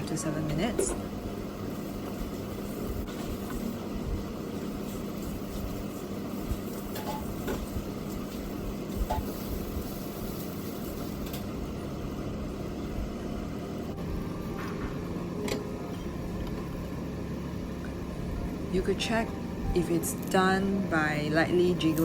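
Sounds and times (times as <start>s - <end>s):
low hum and rumble: 0.0s - 22.0s.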